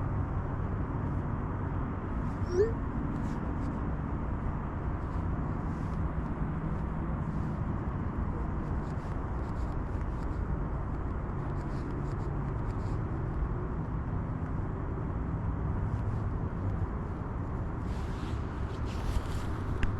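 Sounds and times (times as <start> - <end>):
vehicle engine rumble: 0.0 - 19.9
rustle: 17.8 - 19.9.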